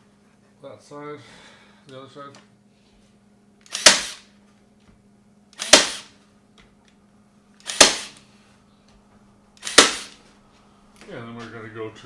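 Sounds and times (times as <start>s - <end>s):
stapler shots: 3.6s - 4.3s, 5.6s - 6.2s, 7.6s - 8.2s, 9.6s - 10.2s.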